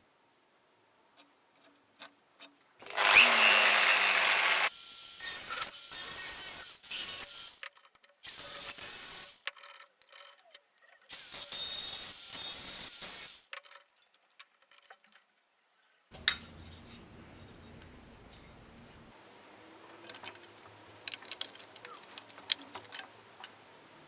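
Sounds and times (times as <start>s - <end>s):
faint low hum: 16.1s - 20.1s.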